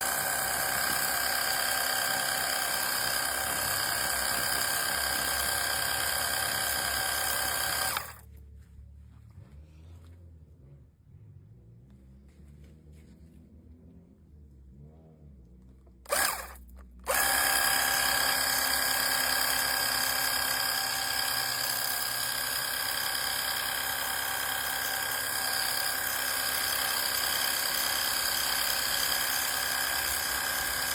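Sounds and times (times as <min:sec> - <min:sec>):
pressure washer motor whining: 0:00.0 - 0:08.2, 0:16.0 - 0:30.9.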